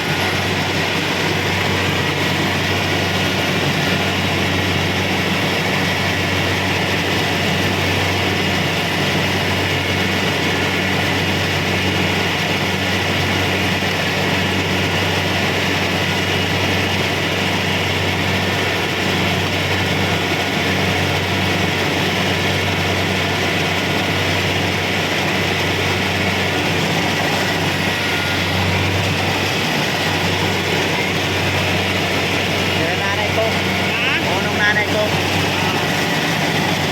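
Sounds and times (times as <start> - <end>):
combine harvester engine hum: 0.0 - 36.9
mechanical whir: 22.4 - 36.9.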